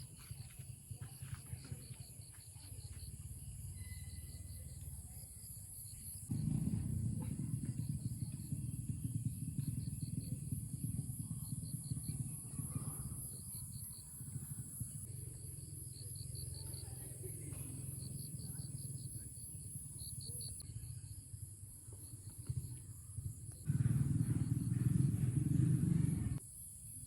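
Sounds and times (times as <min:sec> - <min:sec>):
low rumble: 0:23.7 - 0:26.4.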